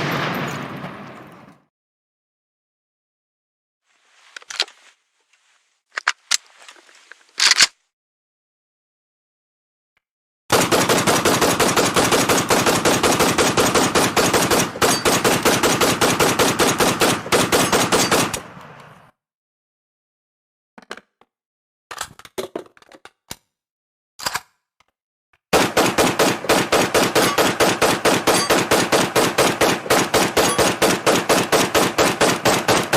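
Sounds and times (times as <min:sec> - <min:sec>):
automatic rifle firing: 0:25.6 - 0:32.9.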